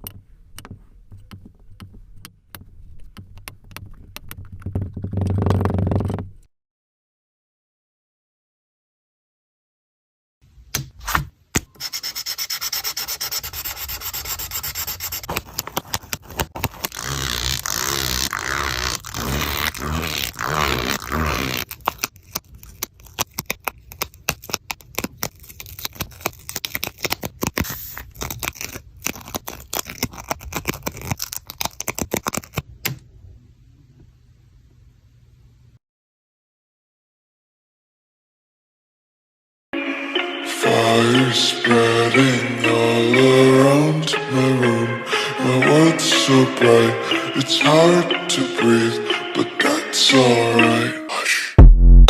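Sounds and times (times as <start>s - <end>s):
rubbing and scraping: 0.0s - 6.4s, 11.0s - 32.7s.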